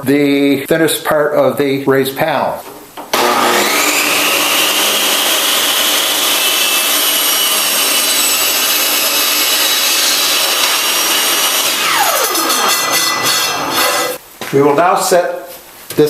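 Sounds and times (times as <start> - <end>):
saw cutting wood board: 3.1 - 14.2
table saw whining: 3.1 - 14.2.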